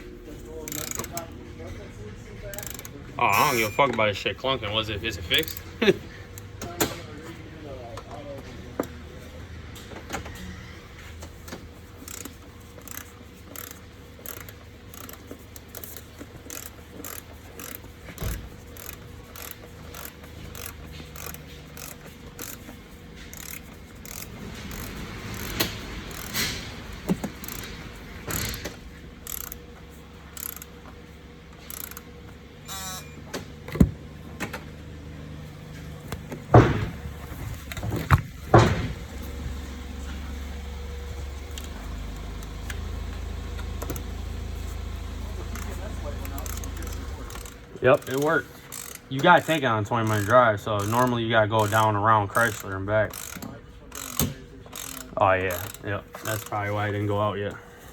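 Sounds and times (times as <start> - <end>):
car engine humming: 0.0 - 57.9
regular engine ticking: 0.0 - 57.9
sharp knocks and clunks: 33.2 - 34.8, 35.8 - 39.4.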